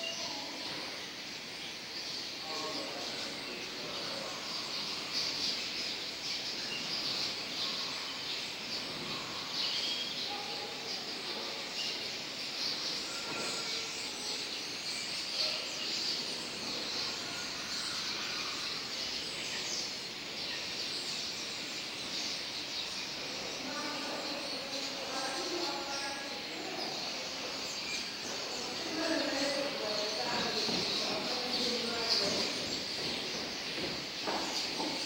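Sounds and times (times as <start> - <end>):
starlings chattering: 0.0 - 35.0.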